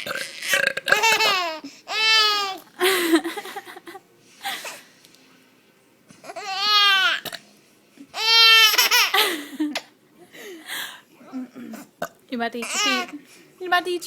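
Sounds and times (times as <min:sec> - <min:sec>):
baby squealing laughs: 0:00.9 - 0:02.6, 0:08.2 - 0:09.2.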